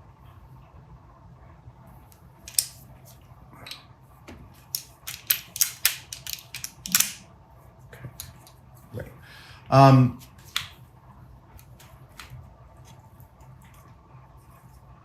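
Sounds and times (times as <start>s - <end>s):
small hard parts clicking: 2.5s - 2.8s, 4.6s - 7.2s.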